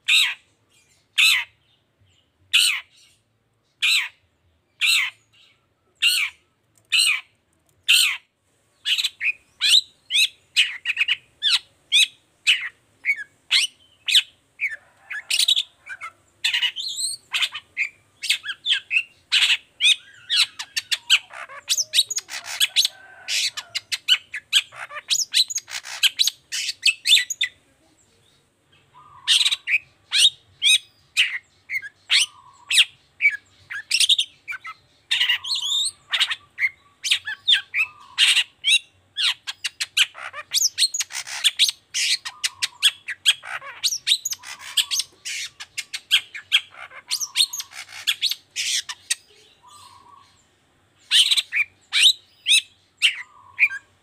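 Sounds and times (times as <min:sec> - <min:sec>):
shrike calling: 0:08.8 - 0:27.5, 0:28.9 - 0:50.4.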